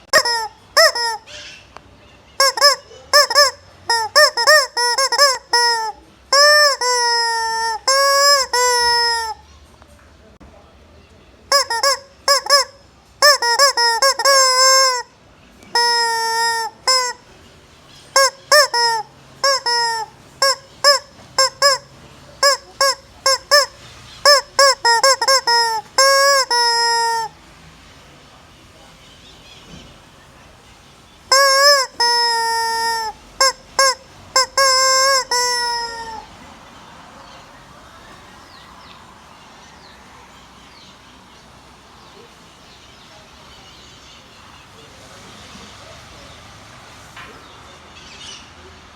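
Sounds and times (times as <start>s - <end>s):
rubber chicken toy squawking: 0.0s - 1.6s, 2.4s - 9.4s, 11.5s - 17.3s, 18.1s - 27.4s, 31.3s - 36.3s
outdoor background noise: 0.0s - 48.9s.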